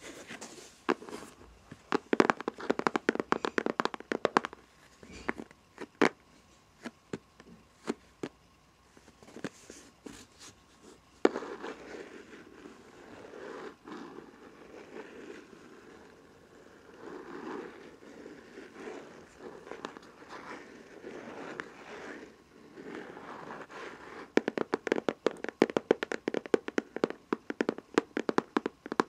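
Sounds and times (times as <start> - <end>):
scratching rustle: 9.0 - 25.6
fingernails tapping a hard surface: 24.4 - 29.0.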